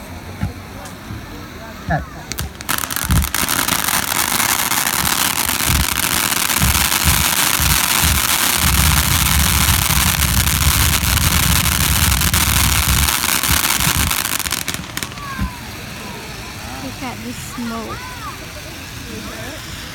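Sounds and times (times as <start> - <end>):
fireworks hissing crackle: 0.0 - 19.9
fireworks low thumps: 0.3 - 15.7.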